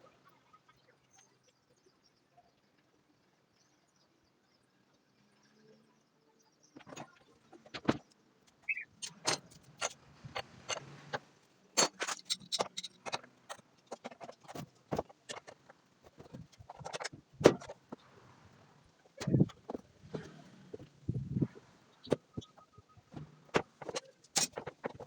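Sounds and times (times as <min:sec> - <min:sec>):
tools and parts clinking: 0:08.6 - 0:11.2, 0:11.8 - 0:18.0, 0:22.0 - 0:25.0.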